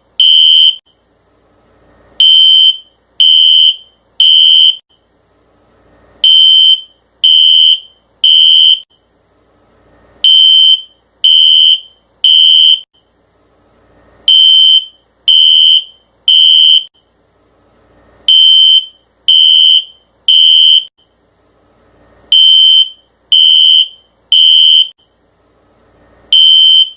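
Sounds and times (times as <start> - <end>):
fire alarm beeping: 0.2 - 0.8, 2.2 - 4.8, 6.2 - 8.9, 10.2 - 12.9, 14.3 - 17.0, 18.3 - 20.9, 22.3 - 25.0, 26.3 - 26.9.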